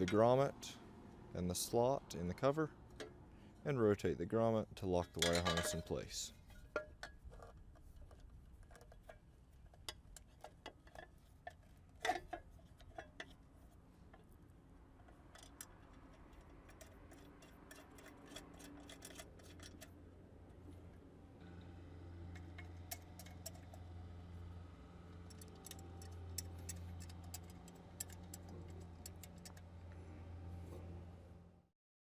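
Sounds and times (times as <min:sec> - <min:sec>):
small plastic and metal parts clicking: 0:15.2 - 0:19.9, 0:25.1 - 0:29.9.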